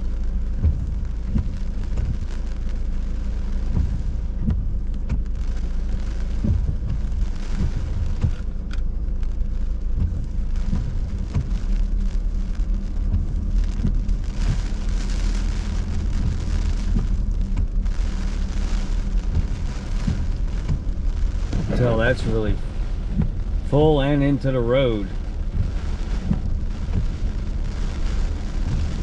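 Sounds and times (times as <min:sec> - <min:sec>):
car driving rumble: 0:00.0 - 0:29.0
heavy rain beating on a car: 0:00.0 - 0:29.0.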